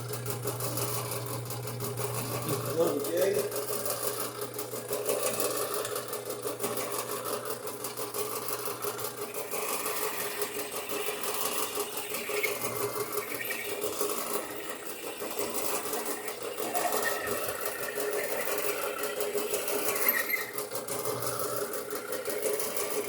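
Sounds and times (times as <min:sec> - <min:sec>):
drill press motor hum: 0:00.0 - 0:23.0
drill bit chattering in steel: 0:08.5 - 0:23.0.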